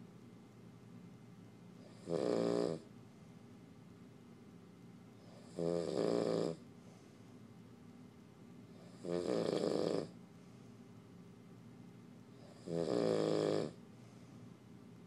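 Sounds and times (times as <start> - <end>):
person snoring: 1.8 - 2.8, 5.2 - 6.6, 8.8 - 10.2, 12.4 - 13.8.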